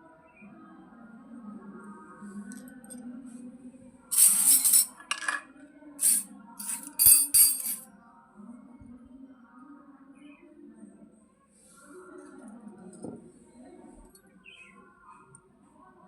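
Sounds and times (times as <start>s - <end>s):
soft background music: 0.0s - 16.0s
toy kitchen pieces clattering: 4.1s - 7.8s.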